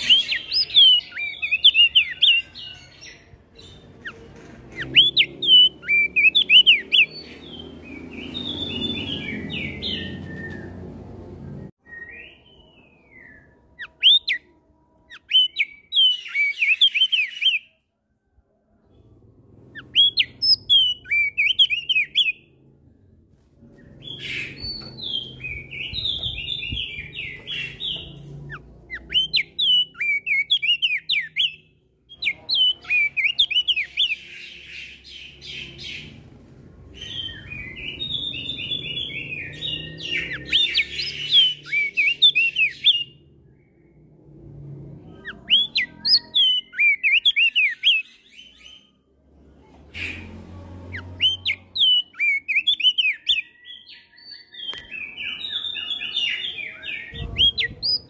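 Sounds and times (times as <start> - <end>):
bird twittering and whistling: 0.0 - 10.9, 11.8 - 14.5, 15.1 - 17.7, 19.7 - 22.4, 23.8 - 36.2, 37.0 - 43.2, 45.2 - 48.8, 50.9 - 58.0
other birds calling: 50.0 - 53.5.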